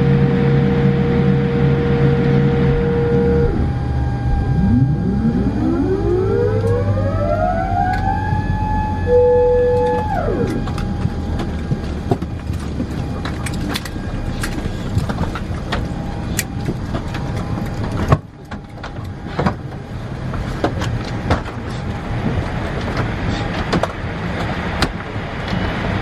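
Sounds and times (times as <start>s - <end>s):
airliner cabin hum: 0.0s - 26.0s
passengers moving clicks and knocks: 6.6s - 26.0s.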